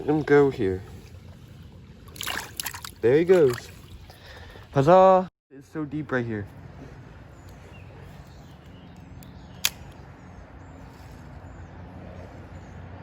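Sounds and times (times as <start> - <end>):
sharp click: 9.2 - 10.1.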